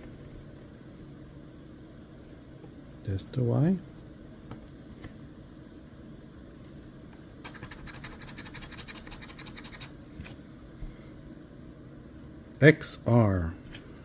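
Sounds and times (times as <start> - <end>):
scratch-off ticket being scratched: 7.4 - 9.9.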